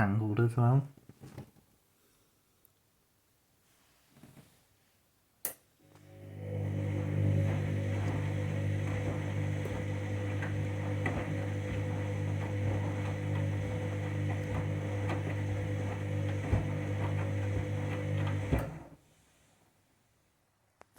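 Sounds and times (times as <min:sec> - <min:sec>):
washing machine motor hum: 0:05.8 - 0:19.0.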